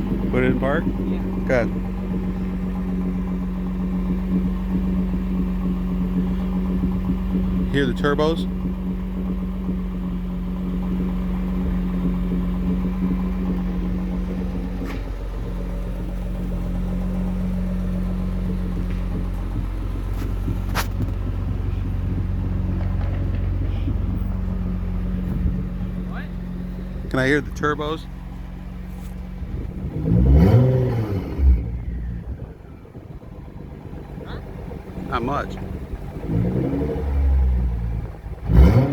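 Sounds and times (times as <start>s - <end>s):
car engine idling: 0.0s - 38.9s.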